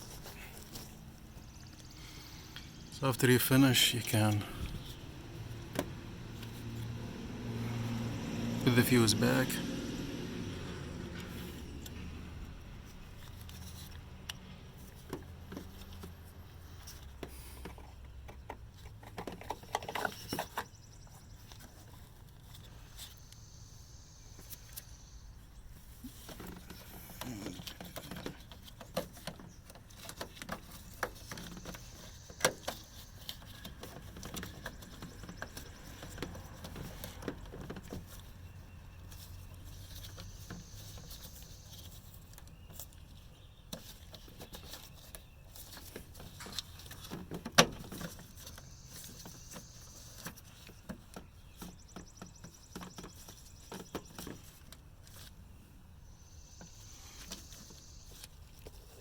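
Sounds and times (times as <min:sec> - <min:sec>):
clicks knocks and rattles: 0:16.9 - 0:20.7.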